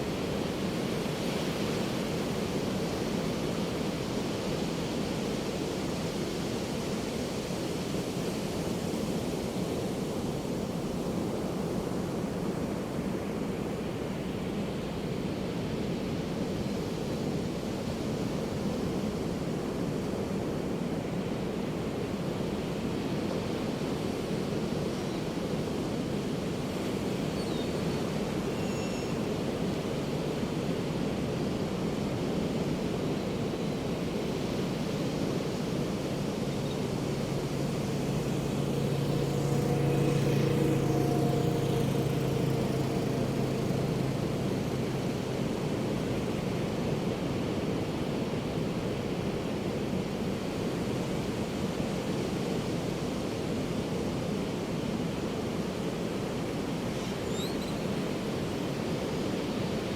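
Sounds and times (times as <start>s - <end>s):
propeller aircraft passing over: 33.8s - 54.7s.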